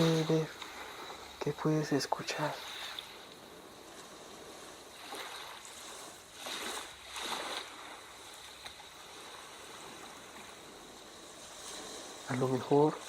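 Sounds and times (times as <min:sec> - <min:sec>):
sea waves surf hiss: 0:00.0 - 0:13.0.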